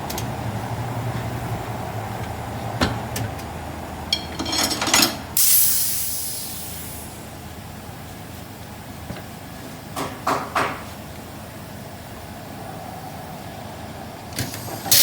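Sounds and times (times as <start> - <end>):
compressed air hiss: 5.4 - 7.3.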